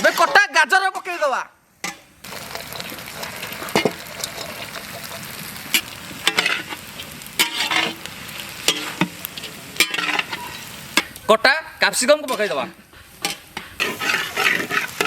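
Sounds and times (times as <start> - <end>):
vegetables sizzling in oil: 1.7 - 15.0
ladle scraping and knocking pan: 1.8 - 6.8, 7.4 - 8.0, 8.6 - 11.1, 12.2 - 15.0.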